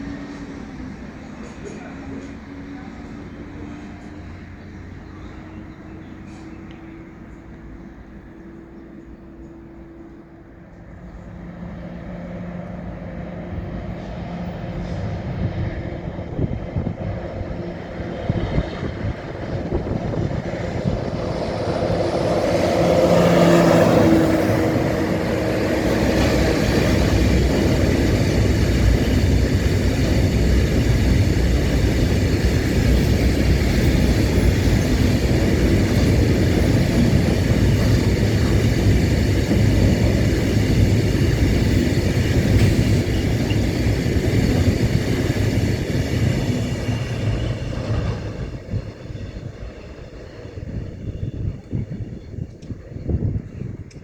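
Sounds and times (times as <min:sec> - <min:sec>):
train engine drone: 0:00.0 - 0:54.0
train wheels rumbling on track: 0:00.0 - 0:54.0.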